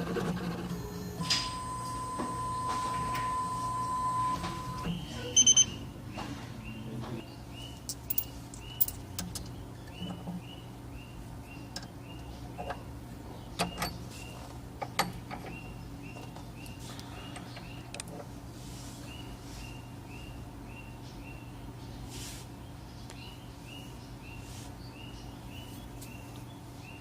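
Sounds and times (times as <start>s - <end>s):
stepper motors whining: 0.0s - 5.7s
short repeated tones: 0.7s - 5.8s
quick beeps: 1.0s - 5.8s.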